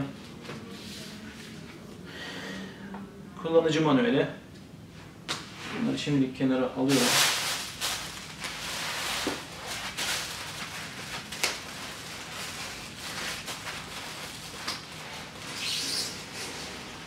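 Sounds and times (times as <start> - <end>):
paper and plastic rustling: 6.9 - 17.0.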